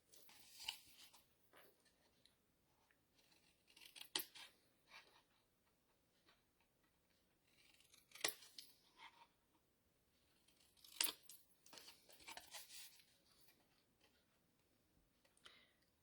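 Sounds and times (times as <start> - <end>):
scissors snipping cardstock: 3.3 - 4.6, 7.6 - 8.8, 10.5 - 12.9
crinkly paper cutting: 10.5 - 13.0.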